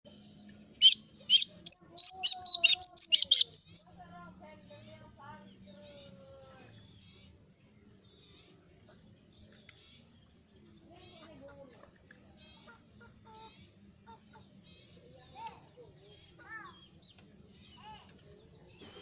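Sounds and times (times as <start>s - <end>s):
songbird sharp chirps: 0.1s - 19.0s
bird soft calls: 0.8s - 4.0s.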